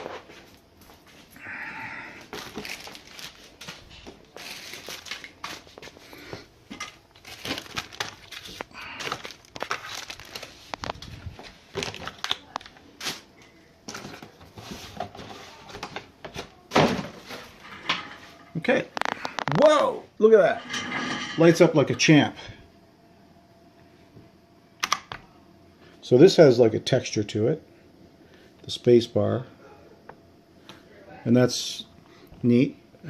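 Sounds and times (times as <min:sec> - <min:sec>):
cables rustling and crinkling: 0:02.2 - 0:19.8.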